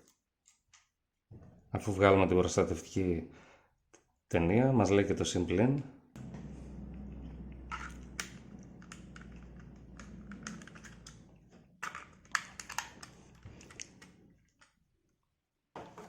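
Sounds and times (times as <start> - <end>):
low steady hum: 6.2 - 14.3.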